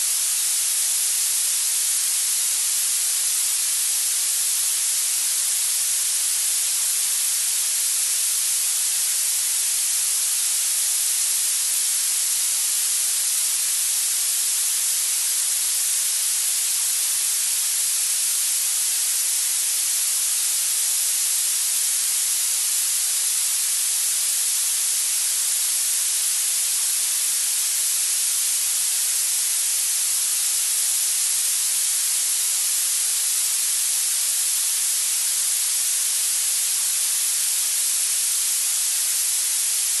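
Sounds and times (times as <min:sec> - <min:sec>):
steady high-pitched masking noise hiss: 0:00.0 - 0:40.0.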